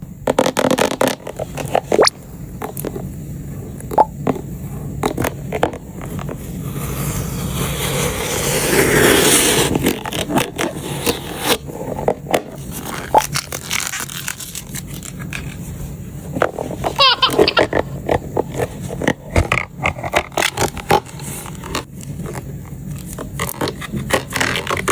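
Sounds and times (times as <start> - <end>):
rustling scrape: 6.0 - 16.9.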